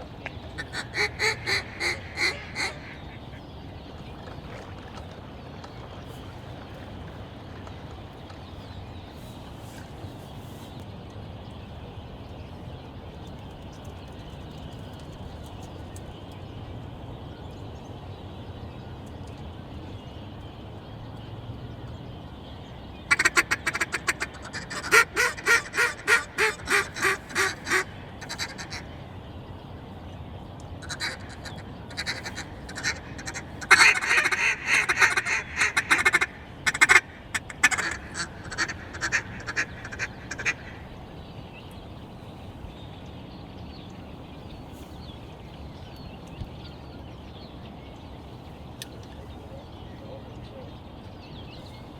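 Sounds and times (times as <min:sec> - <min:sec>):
duck quacking: 0:00.6 - 0:03.4, 0:23.1 - 0:28.9, 0:30.8 - 0:40.9.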